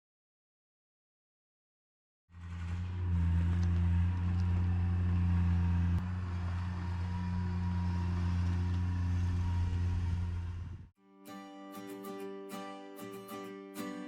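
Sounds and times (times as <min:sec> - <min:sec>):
engine humming: 0:02.3 - 0:10.9.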